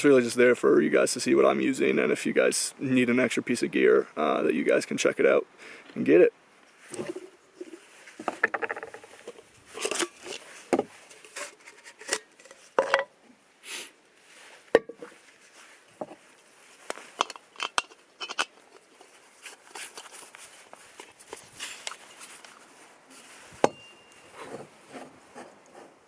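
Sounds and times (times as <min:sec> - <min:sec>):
short rustles: 0:18.9 - 0:25.5.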